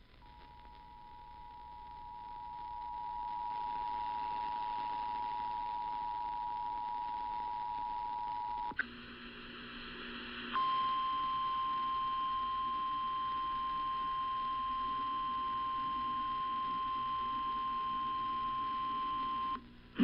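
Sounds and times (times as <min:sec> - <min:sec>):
noisy crackle: 0:00.0 - 0:20.0
click: 0:08.7 - 0:08.9.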